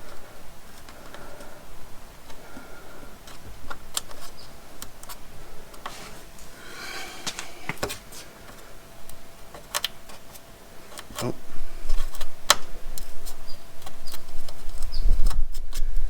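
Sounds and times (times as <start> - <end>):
scraping rustle: 5.1 - 8.6.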